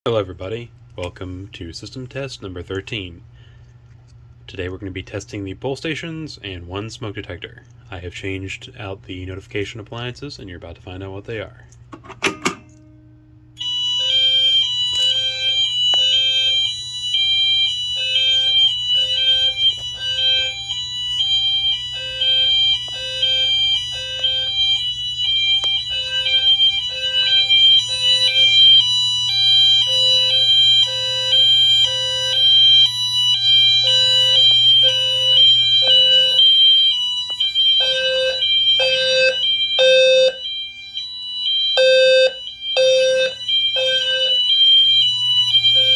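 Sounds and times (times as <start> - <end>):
fire alarm horns hi-lo tone: 12.4 - 45.9.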